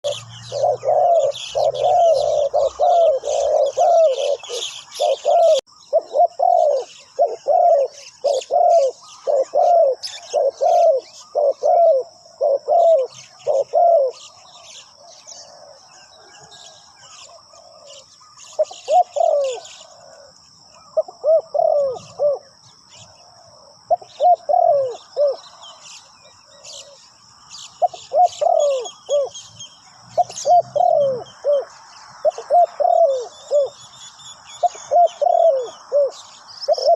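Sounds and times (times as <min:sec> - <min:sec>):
doves cooing: 0:00.0 - 0:29.5, 0:30.1 - 0:36.9
small birds chirping: 0:00.0 - 0:36.9.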